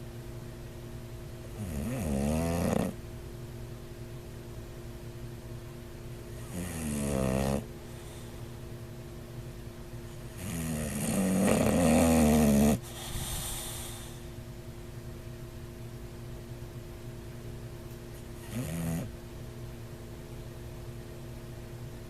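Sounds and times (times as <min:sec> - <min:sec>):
dog snoring: 0:01.4 - 0:03.0, 0:06.3 - 0:08.4, 0:10.3 - 0:14.3, 0:18.2 - 0:19.2
dog breathy exhale: 0:07.9 - 0:08.6, 0:12.7 - 0:14.4.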